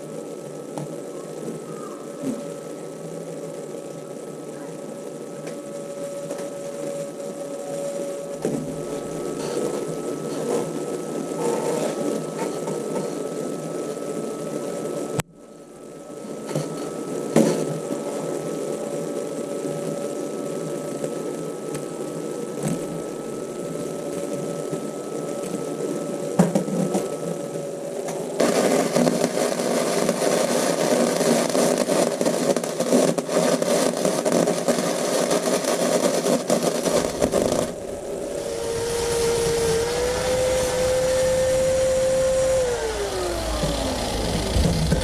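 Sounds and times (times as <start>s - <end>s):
motorcycle engine revving: 37.7s - 45.0s.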